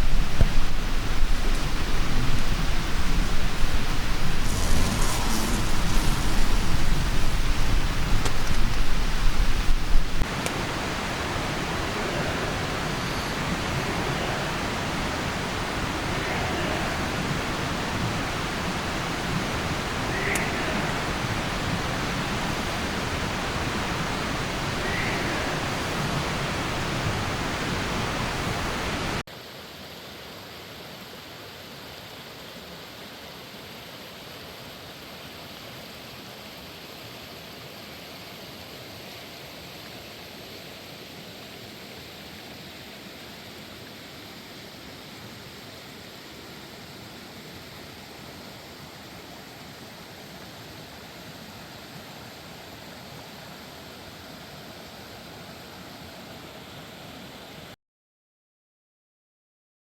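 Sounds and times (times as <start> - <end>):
running water rushing: 0.0 - 29.5.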